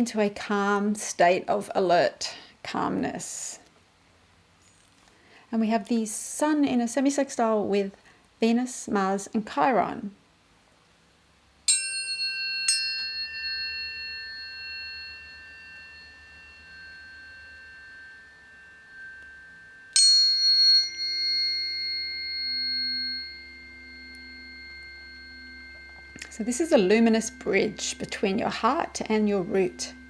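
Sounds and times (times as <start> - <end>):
tuning forks ringing: 11.7 - 30.0.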